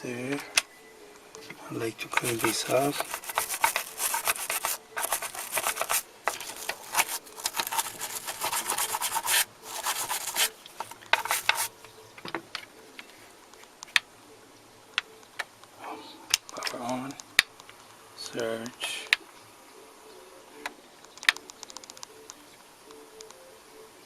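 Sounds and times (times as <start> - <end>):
brisk scrubbing: 1.8 - 11.7.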